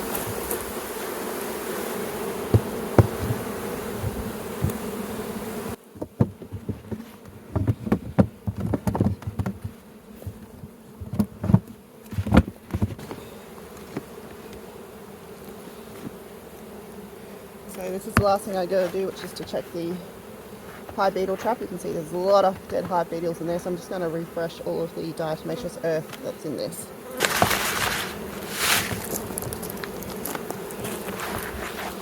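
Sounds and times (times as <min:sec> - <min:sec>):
honeybees buzzing: 0:00.0 - 0:32.0
knocks and bumps of hive handling: 0:00.0 - 0:32.0.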